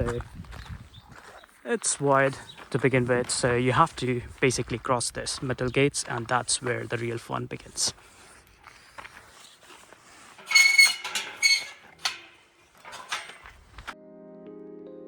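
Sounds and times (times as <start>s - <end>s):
metal gate hinges squeaking: 10.2s - 14.0s
soft piano music: 14.0s - 15.0s.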